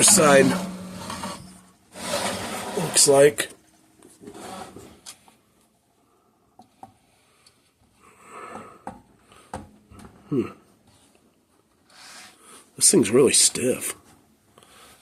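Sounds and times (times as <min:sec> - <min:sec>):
engine scraping when moved: 0:00.0 - 0:03.4.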